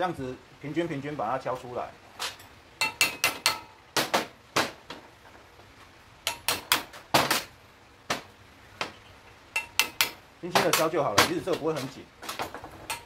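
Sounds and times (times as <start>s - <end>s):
hammer tapping metal: 2.8s - 4.3s, 6.2s - 7.4s, 9.5s - 11.9s.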